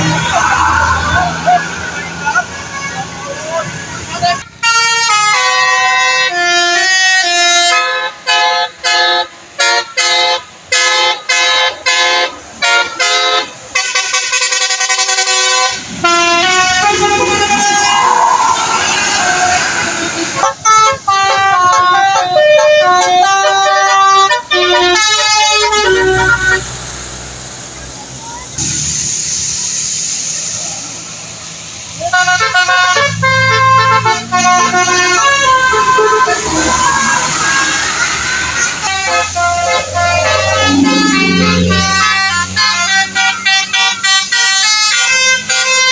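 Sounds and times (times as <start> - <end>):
multi-tone musical air horn: 4.3 - 26.8, 32.0 - 45.9
rain hiss on wet road: 13.6 - 20.9, 26.2 - 39.5
low engine drone: 24.0 - 43.9.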